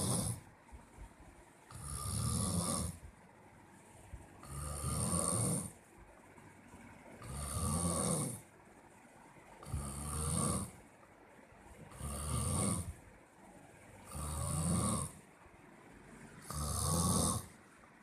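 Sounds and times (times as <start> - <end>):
heavy snoring: 0.0 - 0.5, 1.7 - 3.0, 4.4 - 5.8, 7.2 - 8.5, 9.6 - 10.8, 11.9 - 13.0, 14.0 - 15.2, 16.4 - 17.6.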